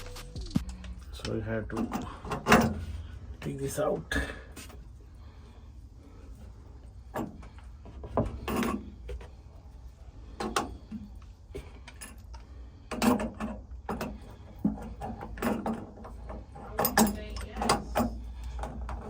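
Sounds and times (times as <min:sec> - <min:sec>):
hand tools clicking and scraping: 0:00.1 - 0:05.0, 0:06.0 - 0:19.0.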